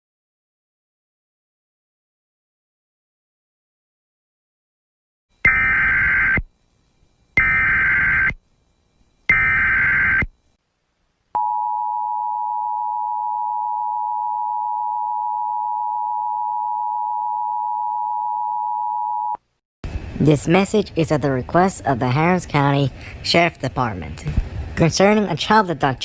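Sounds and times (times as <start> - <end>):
digital data tone bursts: 5.4 - 6.5, 7.4 - 8.4, 9.3 - 10.3.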